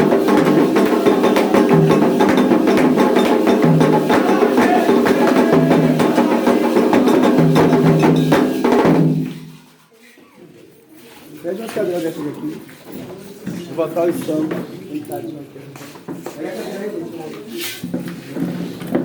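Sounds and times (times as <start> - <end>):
percussion-driven music: 0.0 - 9.8.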